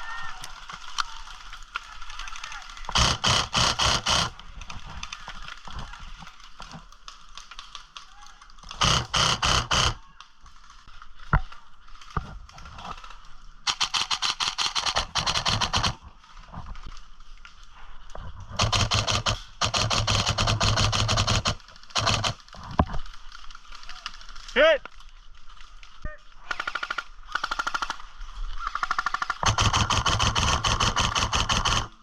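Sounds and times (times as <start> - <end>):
sharp crack: 0.4 - 17.6
airsoft guns firing bursts: 2.4 - 4.5, 8.7 - 10.0, 13.7 - 16.0, 18.5 - 22.5, 26.4 - 28.0, 28.7 - 32.0.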